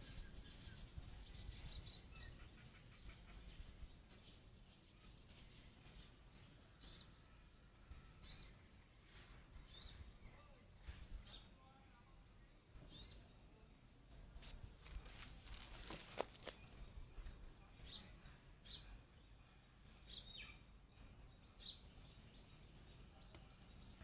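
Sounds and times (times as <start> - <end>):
bird chirping: 0.0 - 5.2, 8.2 - 8.7, 9.6 - 11.6, 12.8 - 13.4, 21.2 - 24.0.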